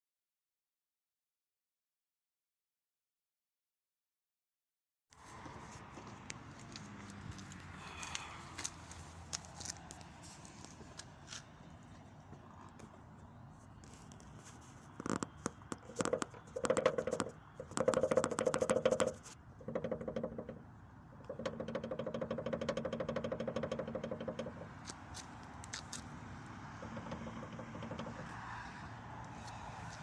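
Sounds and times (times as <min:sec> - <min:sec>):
car bonnet rattling: 0:15.2 - 0:28.7.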